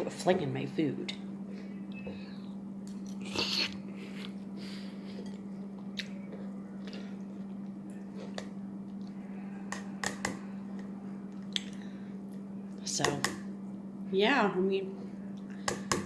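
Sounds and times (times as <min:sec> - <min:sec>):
steady low hum: 0:00.0 - 0:16.0
person chewing food: 0:02.9 - 0:12.5.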